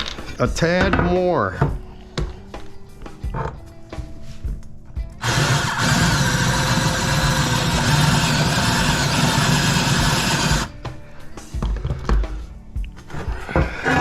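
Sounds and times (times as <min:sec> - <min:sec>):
electric drill cutting aluminum: 0:05.2 - 0:10.7.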